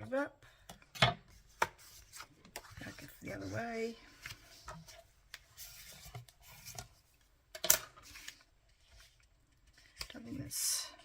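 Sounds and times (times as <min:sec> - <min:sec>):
paper scraping and rustling: 0:01.4 - 0:07.0.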